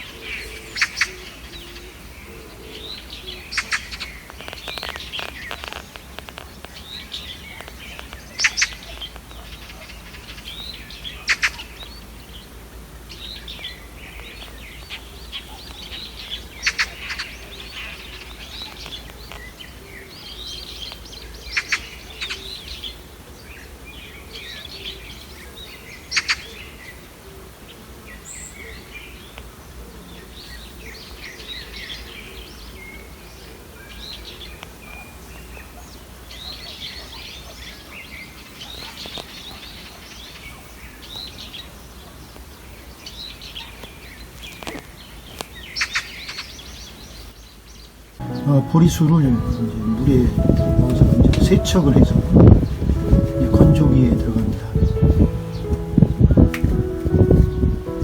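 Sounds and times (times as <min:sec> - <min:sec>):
birds chirping: 0:48.2 - 0:58.0.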